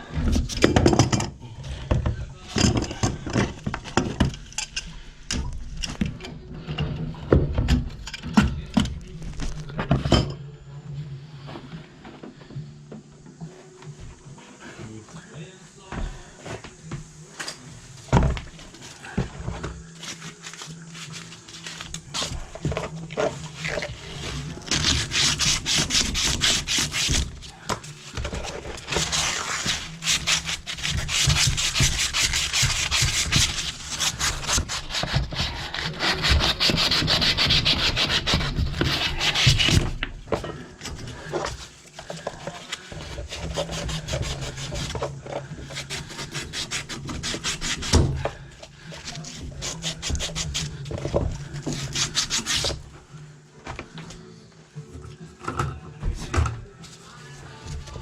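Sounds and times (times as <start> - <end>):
hand tool rasping on metal: 23.2 - 27.5, 28.2 - 52.8.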